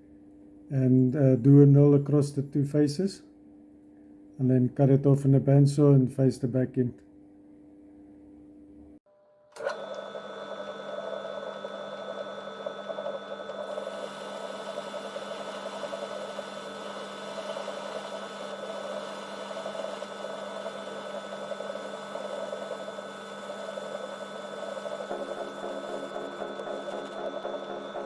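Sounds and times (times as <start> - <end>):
metal lathe whining: 9.6 - 28.0.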